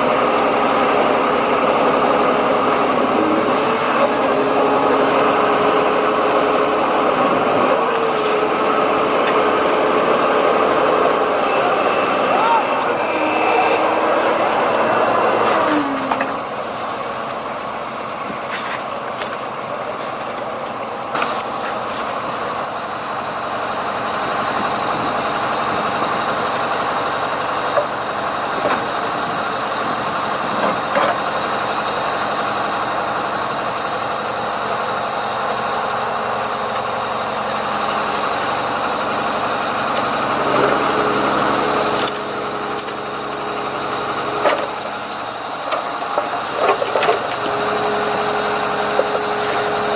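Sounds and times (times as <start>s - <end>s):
heavy diesel engines running: 0.0s - 49.9s.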